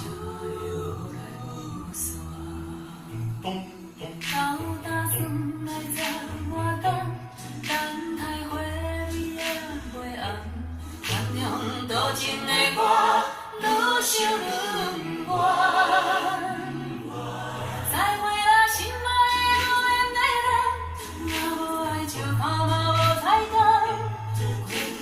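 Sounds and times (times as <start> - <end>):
instrumental music with bass line: 0.0 - 13.0
woman singing with vibrato: 0.0 - 16.7, 17.6 - 25.0.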